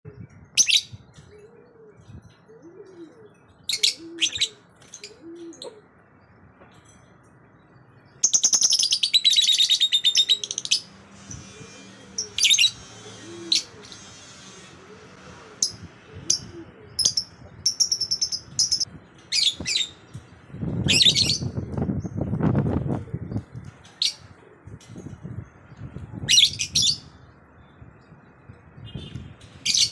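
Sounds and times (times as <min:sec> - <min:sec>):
lovebirds chirping: 0:00.1 - 0:06.9
buzzy bird chatter: 0:17.0 - 0:24.3.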